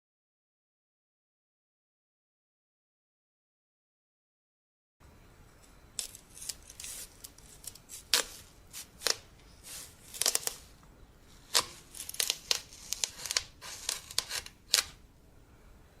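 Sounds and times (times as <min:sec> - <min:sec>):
knife cutting watermelon: 0:06.0 - 0:15.0.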